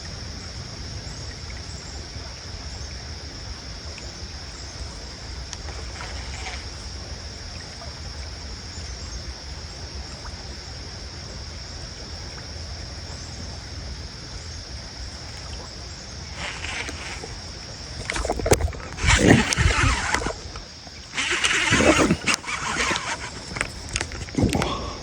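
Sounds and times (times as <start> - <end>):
constant high-pitched buzz: 0.0 - 25.0
rustling: 16.3 - 25.0.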